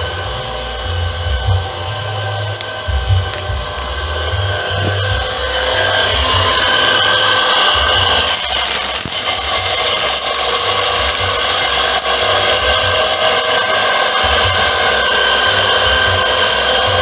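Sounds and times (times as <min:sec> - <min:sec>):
electric motor whining: 0:00.0 - 0:17.0.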